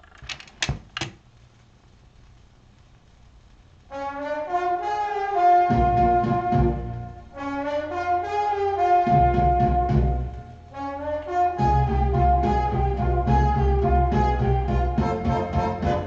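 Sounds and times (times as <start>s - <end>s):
record surface hiss: 0.0s - 16.0s
orchestral music with brass: 3.9s - 16.0s.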